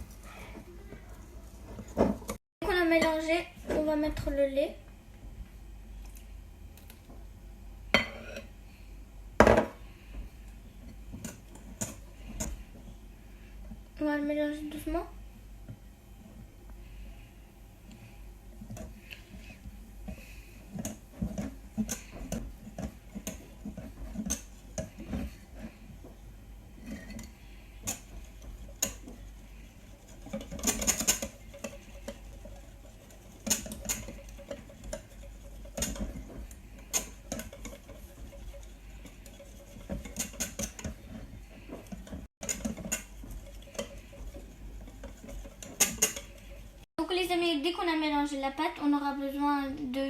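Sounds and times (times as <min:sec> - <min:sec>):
utensil stirring batter in bowl: 0:09.9 - 0:13.8, 0:16.2 - 0:46.9.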